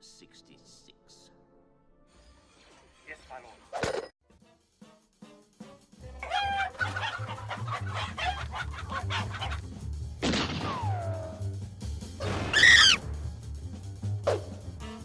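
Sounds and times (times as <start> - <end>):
cartoon chicken clucking: 6.2 - 9.6, 12.6 - 13.0
loud arching cry: 12.5 - 13.0.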